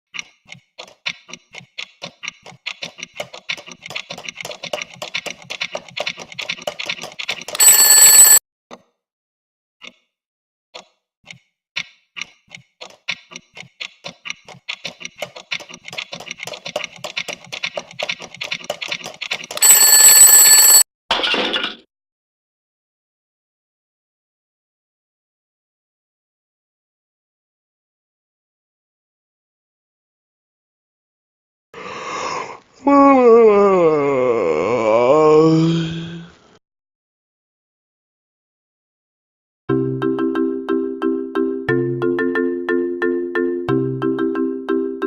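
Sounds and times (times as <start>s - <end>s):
alarm clock bell ringing: 7.6s - 8.4s, 19.6s - 20.8s.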